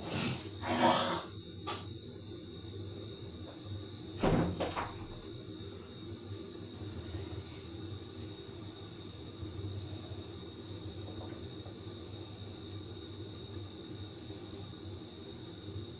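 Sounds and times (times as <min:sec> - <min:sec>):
pot of rice cooking hum: 0:00.0 - 0:15.9.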